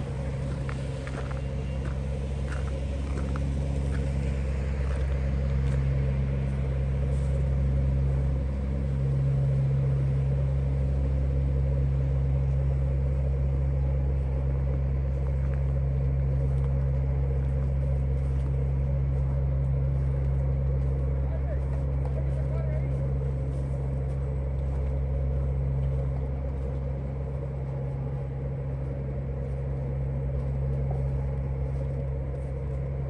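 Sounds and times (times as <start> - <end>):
low engine hum: 0.0 - 33.0.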